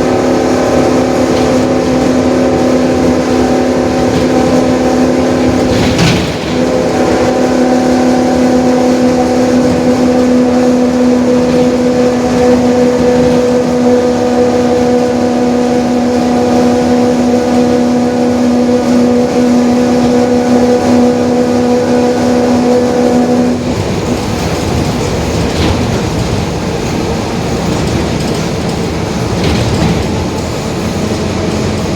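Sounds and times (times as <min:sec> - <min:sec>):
differential droning whine: 0:00.0 - 0:24.9
bus diesel engine running: 0:00.0 - 0:31.9.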